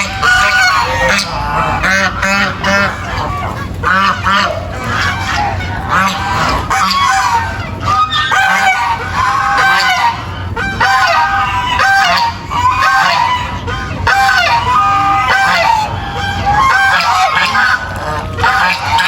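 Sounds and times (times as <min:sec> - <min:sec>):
farm animals honking: 0:00.0 - 0:19.0.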